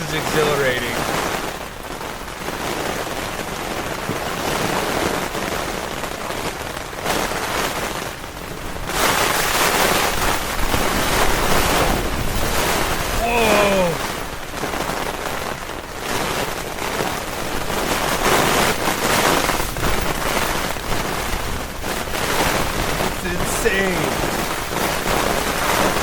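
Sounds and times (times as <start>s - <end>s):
heavy wind-driven rain: 0.0s - 26.0s.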